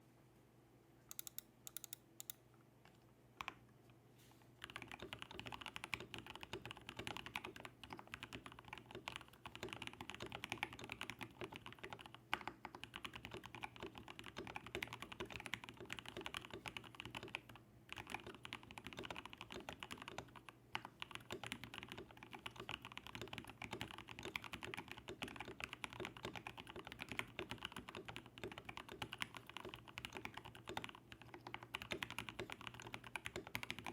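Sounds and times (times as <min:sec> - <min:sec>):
mechanical keyboard typing: 0:01.1 - 0:02.4, 0:04.6 - 0:33.9.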